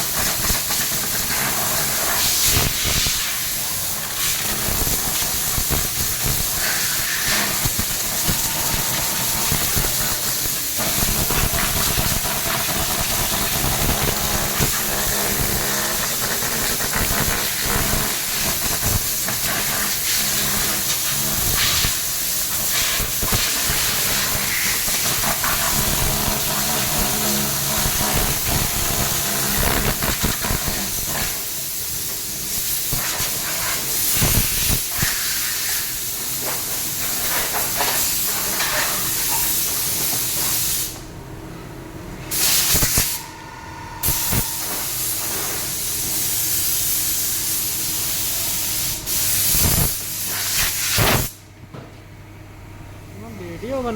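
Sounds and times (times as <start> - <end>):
compressed air blow gun hissing: 2.0 - 36.1, 48.7 - 51.4.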